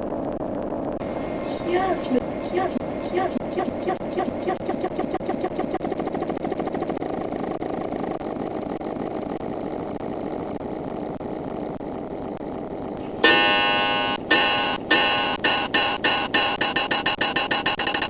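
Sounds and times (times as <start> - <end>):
fast buzzing looped drone: 1.0 - 11.4, 13.0 - 18.0
bright synthesizer chord: 13.0 - 17.8.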